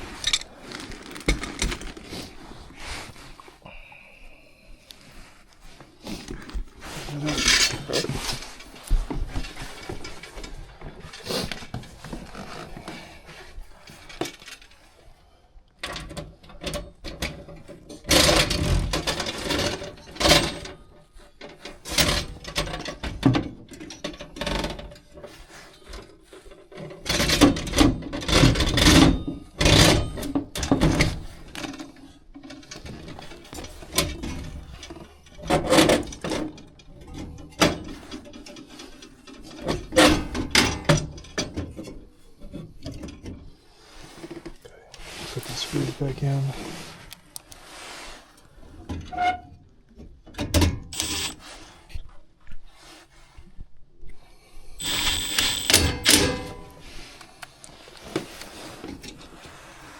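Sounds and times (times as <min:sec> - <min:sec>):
metal parts scraping and clattering: 0:00.0 - 0:03.2, 0:06.8 - 0:12.7, 0:50.9 - 0:51.6, 0:54.8 - 0:57.2.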